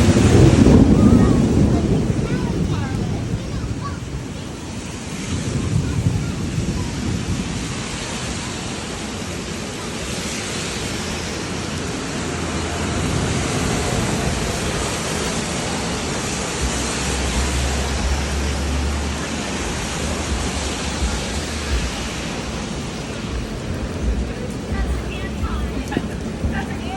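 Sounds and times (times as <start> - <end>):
heavy rain pouring: 0.0 - 26.9
low rumble: 11.3 - 26.9.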